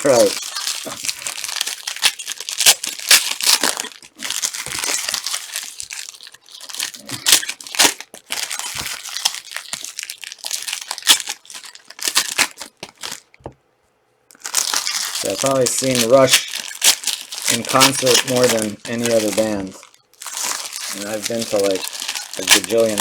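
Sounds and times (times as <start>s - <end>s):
foil wrappers crinkling and tearing: 0.0s - 13.5s, 14.3s - 23.0s.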